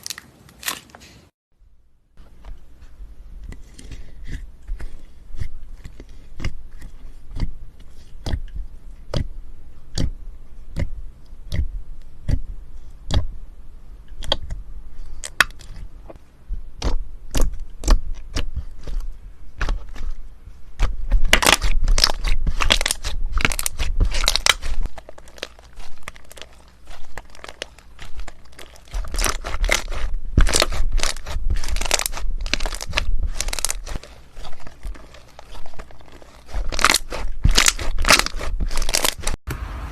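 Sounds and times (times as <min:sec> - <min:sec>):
crunchy slime crackling and popping: 0:14.1 - 0:15.8, 0:16.8 - 0:39.4.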